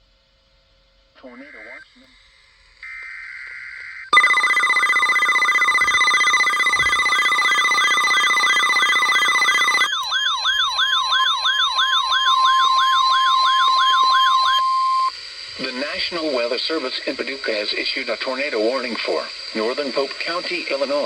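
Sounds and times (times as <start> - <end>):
rapid wailing siren: 2.9 - 15.1
steady alert tones: 4.2 - 15.1
buzzy digital header data: 4.2 - 15.9.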